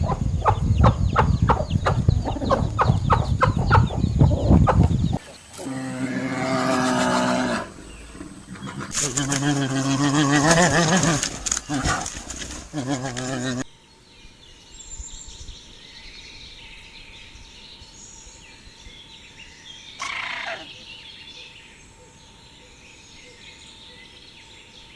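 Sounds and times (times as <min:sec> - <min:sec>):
birds chirping: 0:00.0 - 0:24.9
loud warbling animal call: 0:05.6 - 0:07.8.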